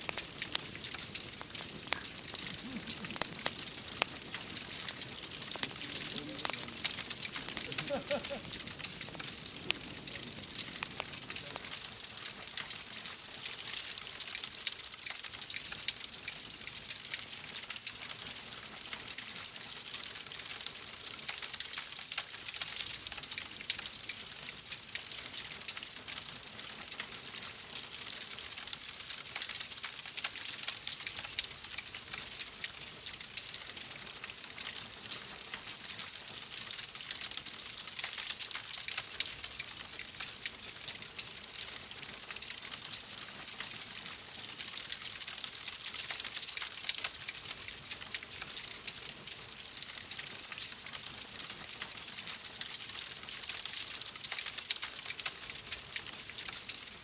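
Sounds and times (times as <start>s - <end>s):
rain hiss: 0.0s - 57.0s
wood fire crackling: 0.0s - 57.0s.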